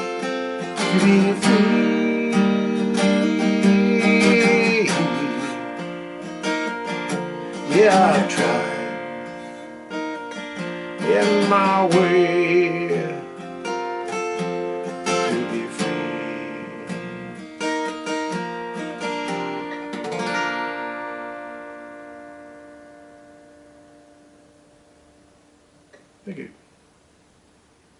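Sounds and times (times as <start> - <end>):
acoustic guitar chords: 0.0 - 27.9.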